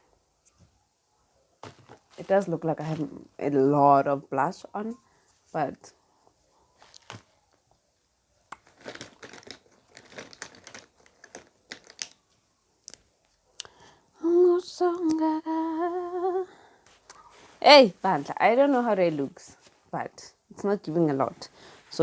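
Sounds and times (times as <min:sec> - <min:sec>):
small items clicking and rustling: 0:01.6 - 0:03.2, 0:06.8 - 0:07.3, 0:08.6 - 0:13.1
woman humming: 0:14.2 - 0:16.5.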